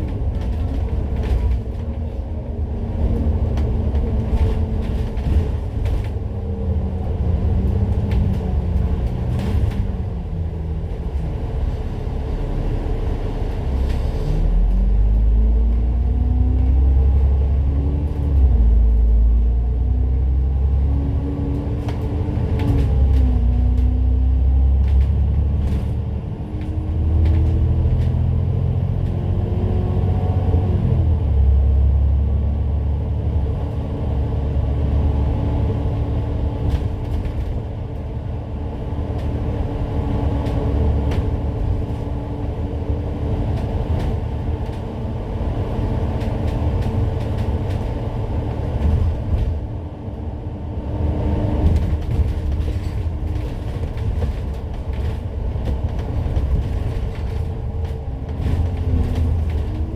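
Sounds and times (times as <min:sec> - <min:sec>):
bus engine rumble: 0:00.0 - 0:59.9
body rattles and clicks: 0:39.1 - 0:49.6, 0:51.6 - 0:59.9.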